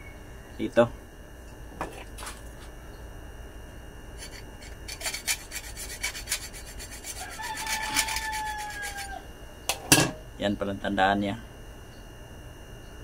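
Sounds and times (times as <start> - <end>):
thin squeal: 4.2 - 9.2
scraping on metal housing: 7.0 - 9.1.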